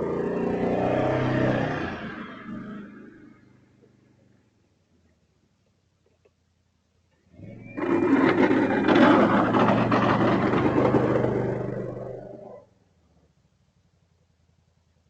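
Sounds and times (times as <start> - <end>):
atv engine running rough: 0.0 - 4.3, 7.4 - 12.6.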